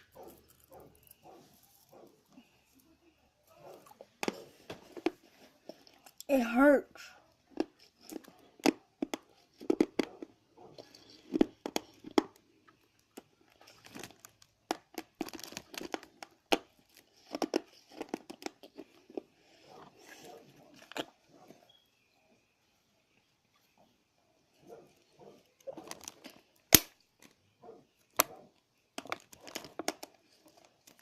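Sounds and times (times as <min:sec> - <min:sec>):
tearing and crinkling: 0:00.0 - 0:02.9, 0:13.1 - 0:21.5, 0:25.6 - 0:27.4, 0:29.0 - 0:31.0.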